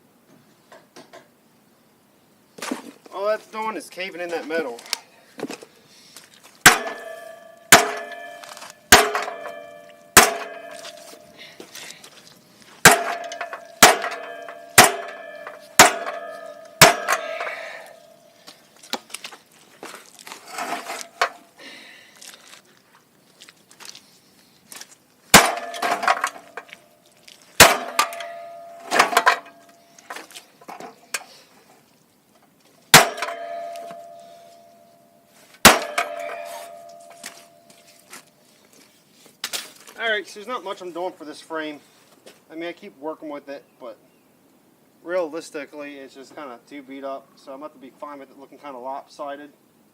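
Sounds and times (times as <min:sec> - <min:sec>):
hammer clanging on metal: 0:06.6 - 0:11.4, 0:12.8 - 0:18.2, 0:25.4 - 0:26.7, 0:27.6 - 0:29.7, 0:33.0 - 0:34.8, 0:35.6 - 0:37.8
soft metal scraping: 0:19.9 - 0:21.5, 0:33.3 - 0:39.4.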